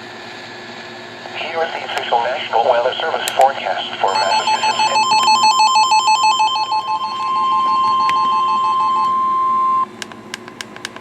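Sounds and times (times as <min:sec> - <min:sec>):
steady electronic alarm tone: 0:04.1 - 0:09.9
two-pitch warbling alarm beeps: 0:04.1 - 0:09.9.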